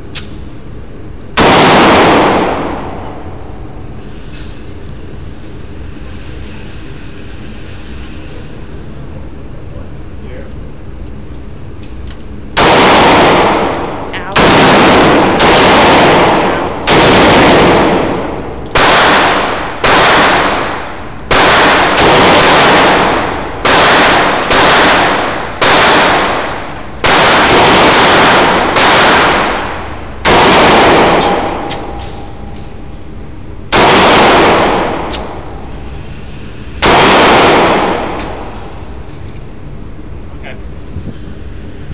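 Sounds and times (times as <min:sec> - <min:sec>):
pistol shots ringing: 0:01.4 - 0:03.3, 0:12.6 - 0:32.9, 0:33.7 - 0:35.7, 0:36.8 - 0:38.9.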